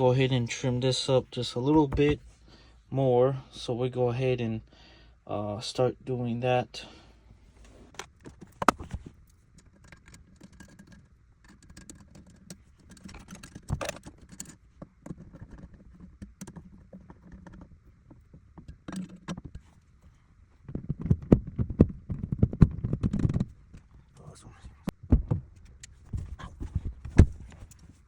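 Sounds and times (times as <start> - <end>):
carpet clicks and taps: 1.7 - 2.3.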